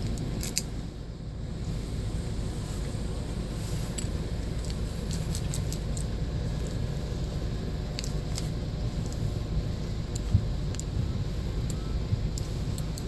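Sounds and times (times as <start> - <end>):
small metallic clicks and tinkling: 0.0 - 0.7, 3.9 - 6.8, 10.0 - 11.0, 11.6 - 13.0
steady low hum: 0.0 - 13.0.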